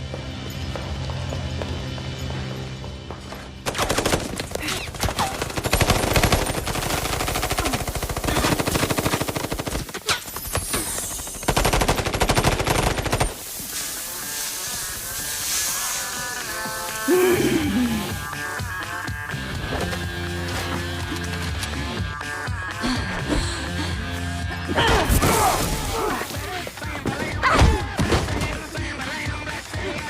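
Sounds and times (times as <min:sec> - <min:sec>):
rapid automatic gunfire: 0:03.6 - 0:13.5
soundtrack music: 0:13.8 - 0:30.0.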